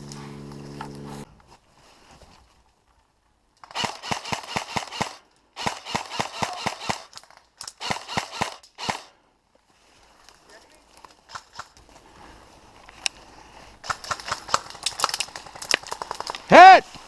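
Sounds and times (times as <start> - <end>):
airsoft gun rapid shots: 3.7 - 9.1, 13.8 - 16.8.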